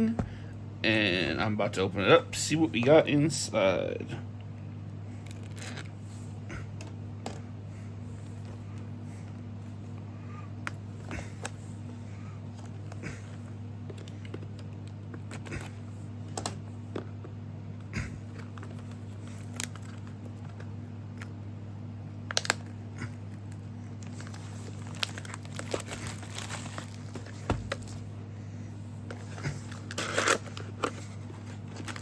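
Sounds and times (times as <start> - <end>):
low electrical hum: 0.0 - 32.0
plastic wrap and cardboard crinkling: 5.2 - 5.9, 23.4 - 28.1, 29.1 - 32.0.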